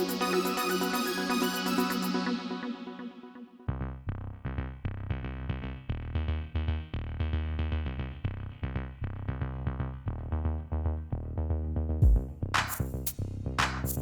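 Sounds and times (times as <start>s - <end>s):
electronic music with synthesizer: 0.0s - 3.7s.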